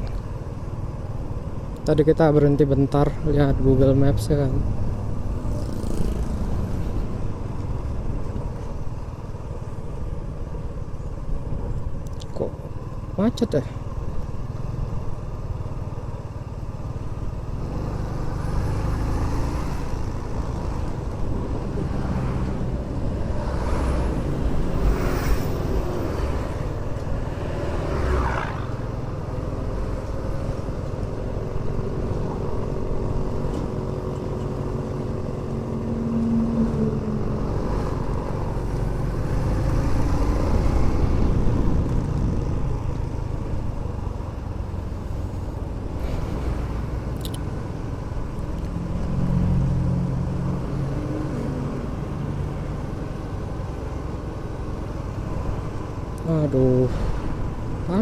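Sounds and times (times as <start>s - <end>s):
passing vehicles: 0.0s - 58.0s
road rumble: 0.0s - 58.0s
motorcycle engine: 4.6s - 11.8s.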